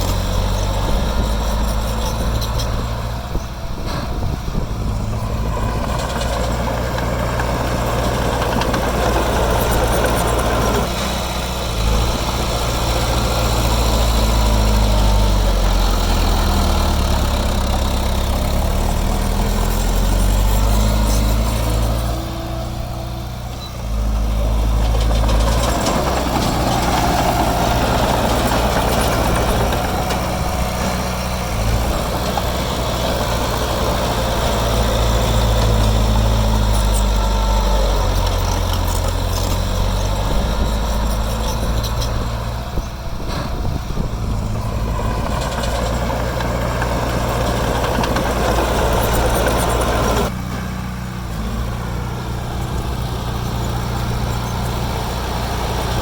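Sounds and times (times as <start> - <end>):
diesel engine revving: 0.0 - 56.0.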